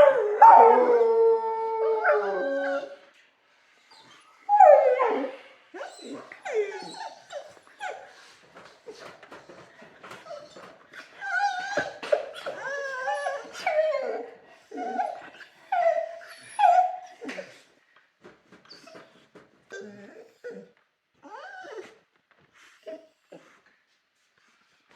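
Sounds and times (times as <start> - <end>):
dog whining and yipping: 4.0 - 8.0, 10.2 - 17.1, 21.2 - 22.0.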